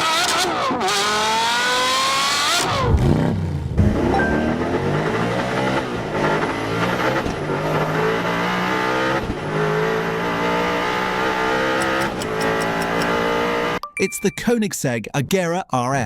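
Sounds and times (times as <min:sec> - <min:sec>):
sports car accelerating hard: 0:00.0 - 0:13.8
quick gear upshifts: 0:09.2 - 0:13.8.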